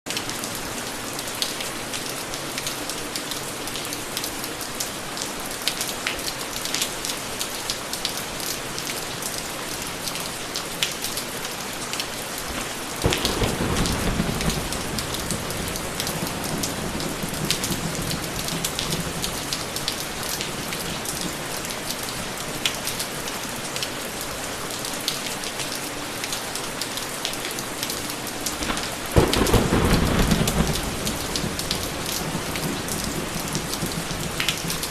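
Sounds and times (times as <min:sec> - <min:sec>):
steady rain falling: 0:00.1 - 0:34.9
thunder rumbling: 0:12.8 - 0:21.5, 0:28.6 - 0:34.9
raindrops ticking: 0:28.5 - 0:34.9.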